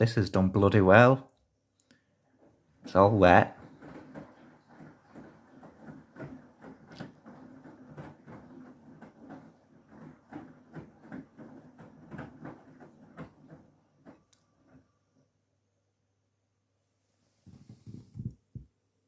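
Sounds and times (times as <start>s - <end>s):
washing machine drum tumbling load: 2.2s - 14.9s.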